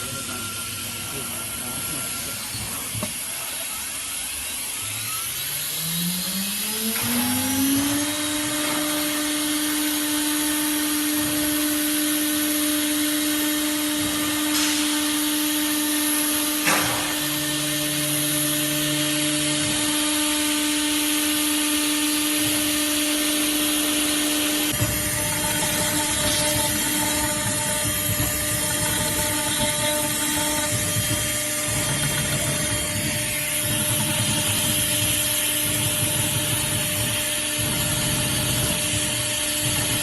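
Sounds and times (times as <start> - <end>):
electric spindle whine: 0.0 - 40.0
low motor hum: 13.0 - 40.0.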